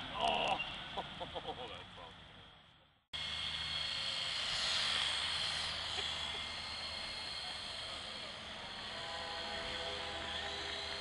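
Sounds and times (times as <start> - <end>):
remote-controlled helicopter flying: 3.2 - 11.0.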